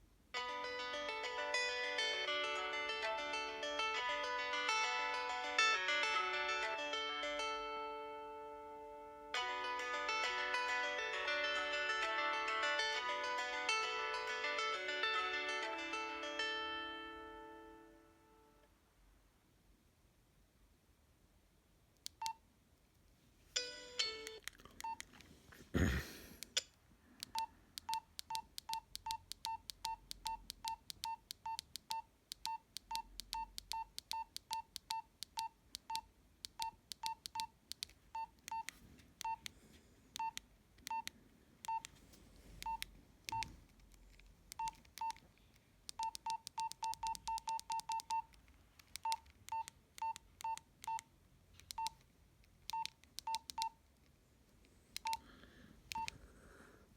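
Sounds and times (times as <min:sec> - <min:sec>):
keypad beeps: 0:22.1 - 0:22.4, 0:23.8 - 0:25.1, 0:26.6 - 0:37.5, 0:38.2 - 0:39.5, 0:40.2 - 0:41.9, 0:42.6 - 0:43.5, 0:44.5 - 0:45.2, 0:45.9 - 0:48.4, 0:49.0 - 0:52.0, 0:52.7 - 0:53.8, 0:55.0 - 0:55.2, 0:55.9 - 0:56.2.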